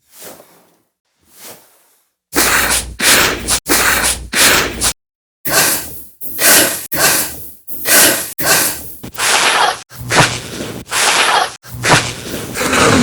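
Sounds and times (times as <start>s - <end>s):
person breathing hard: 2.4s - 4.9s, 5.5s - 9.5s.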